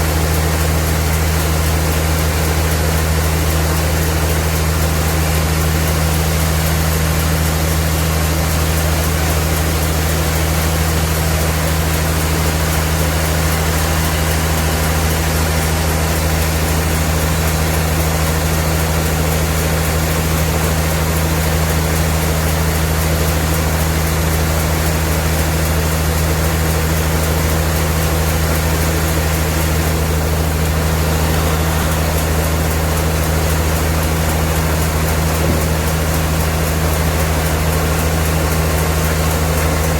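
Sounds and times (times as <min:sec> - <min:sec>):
constant rushing noise: 0:00.0 - 0:39.9
sawmill machinery hum: 0:00.0 - 0:39.9.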